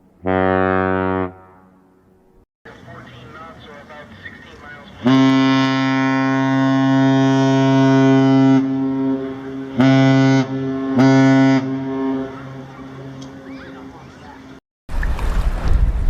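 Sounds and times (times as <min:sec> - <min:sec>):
ship whistle blasts: 0:05.0 - 0:12.7.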